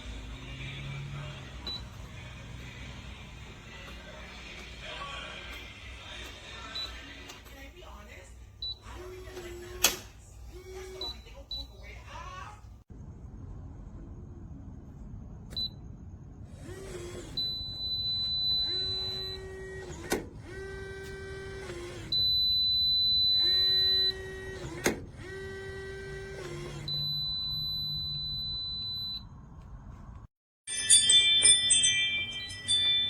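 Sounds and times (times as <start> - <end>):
small bolt motor whirring: 16.5 - 17.5, 18.6 - 22.2, 23.4 - 27.0
long high-pitched beeps: 17.4 - 19.5, 26.9 - 29.3.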